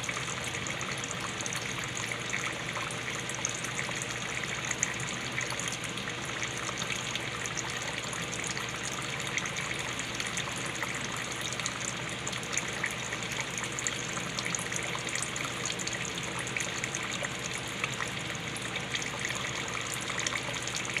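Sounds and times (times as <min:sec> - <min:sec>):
small water splashes: 0:00.0 - 0:21.0
water pouring in a stream: 0:00.0 - 0:21.0.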